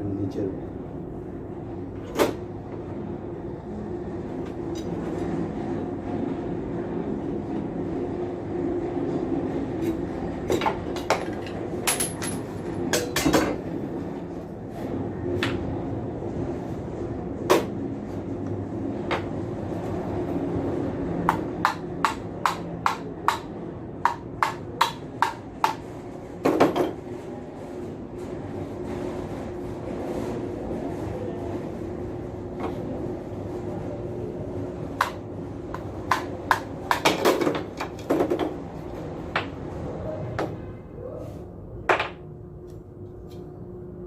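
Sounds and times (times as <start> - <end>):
steady low hum: 0.0 - 44.0
tools knocking on metal parts: 10.6 - 13.6.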